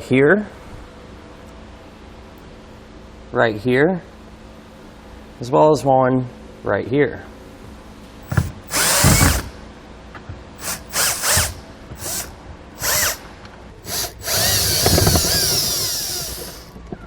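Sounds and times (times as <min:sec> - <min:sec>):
power drill-driver spinning: 0:08.2 - 0:09.6, 0:10.6 - 0:13.2, 0:13.8 - 0:16.8.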